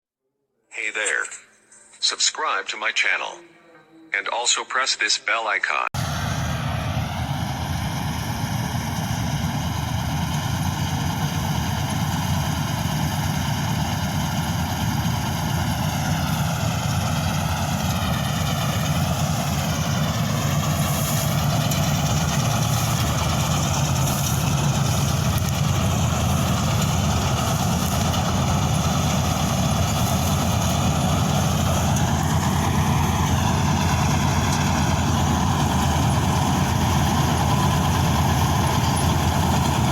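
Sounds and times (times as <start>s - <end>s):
whine changing pitch: 6.0s - 10.9s
combine harvester engine running: 6.0s - 39.9s.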